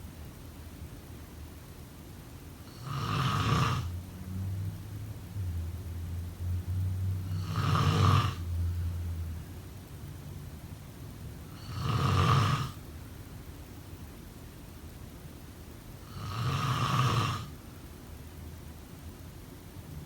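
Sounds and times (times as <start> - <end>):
person snoring: 2.7 - 3.9, 7.3 - 8.4, 11.6 - 12.8, 16.1 - 17.5.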